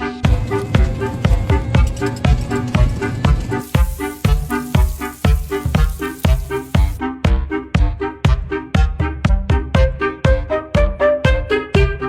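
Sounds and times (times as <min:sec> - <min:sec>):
low drum beat: 0:00.2 - 0:07.9.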